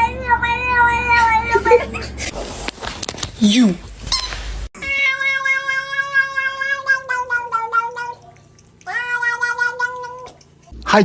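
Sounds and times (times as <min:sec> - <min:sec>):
cat meowing: 0:00.0 - 0:01.7, 0:04.8 - 0:10.4.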